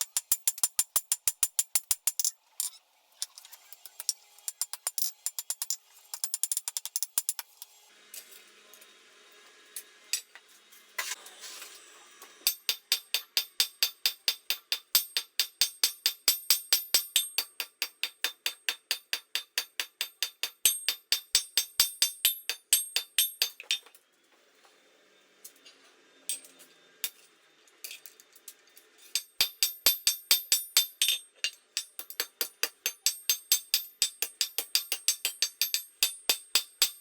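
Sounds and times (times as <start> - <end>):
hammer striking steel on anvil: 10.1 - 10.4, 12.4 - 23.9, 26.3 - 27.3, 29.0 - 37.0.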